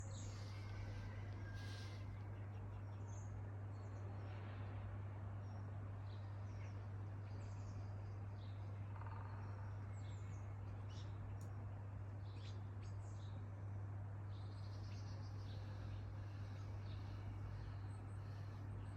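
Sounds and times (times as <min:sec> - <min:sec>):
steady low hum: 0:00.0 - 0:18.9
small birds chirping: 0:05.5 - 0:18.9.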